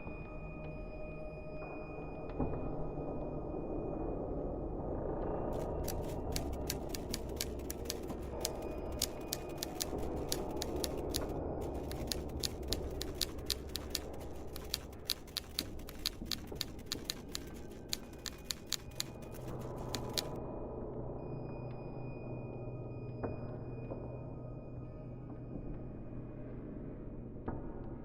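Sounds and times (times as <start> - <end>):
sharp clicks: 5.6 - 20.4.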